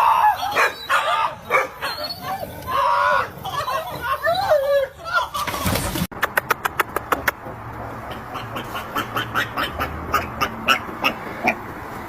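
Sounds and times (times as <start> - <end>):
sharp clicks: 6.2 - 7.4.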